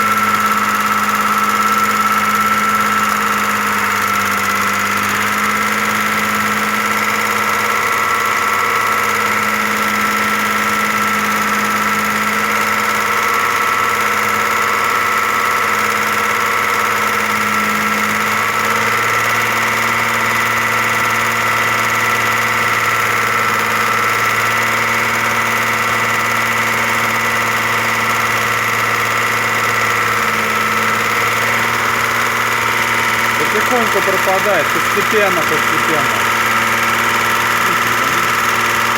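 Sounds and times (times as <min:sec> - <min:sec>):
car engine idling: 0:00.0 - 0:10.4, 0:29.2 - 0:38.9.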